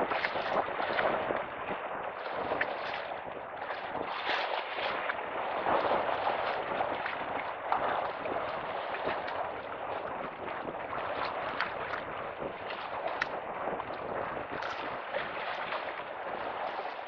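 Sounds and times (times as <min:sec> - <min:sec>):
small splashes and clicks: 0:00.0 - 0:01.5, 0:02.1 - 0:05.2, 0:05.8 - 0:17.0
lake water lapping at shore: 0:00.0 - 0:17.0
wind gusting across microphone: 0:00.0 - 0:17.0.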